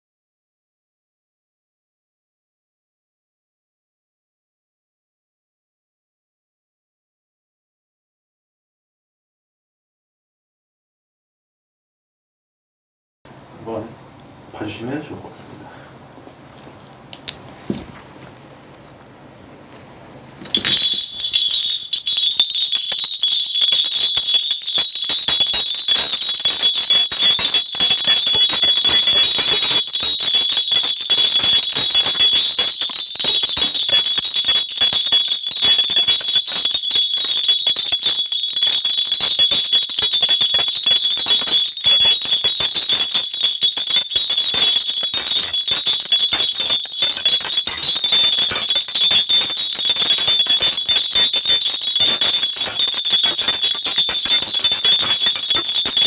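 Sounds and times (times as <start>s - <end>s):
bells jingling: 20.4s - 56.0s.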